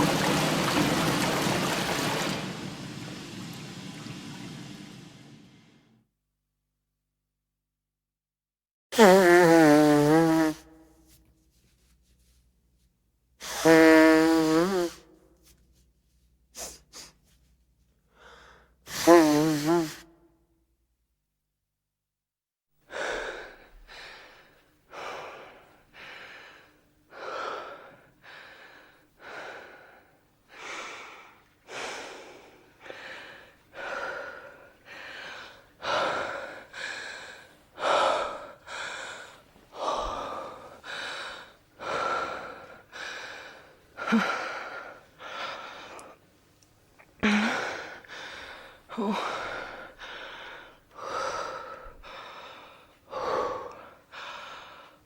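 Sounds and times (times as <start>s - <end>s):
person breathing heavily: 18.1s - 18.8s, 22.9s - 46.2s, 47.2s - 55.0s.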